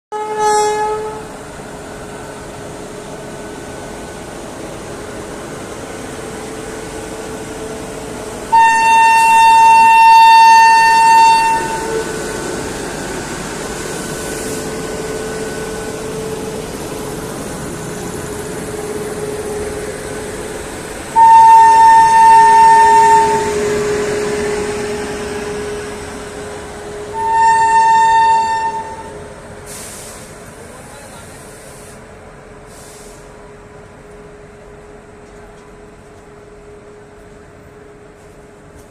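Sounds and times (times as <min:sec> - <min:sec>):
shrill train horn blasts: 0:00.1 - 0:01.4, 0:08.4 - 0:12.6, 0:21.1 - 0:29.3
train hum and rumble: 0:00.1 - 0:38.9.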